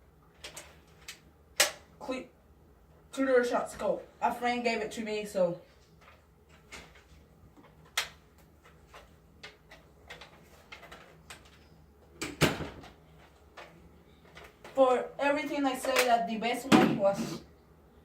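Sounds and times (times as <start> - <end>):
plastic clatter: 7.6 - 11.6.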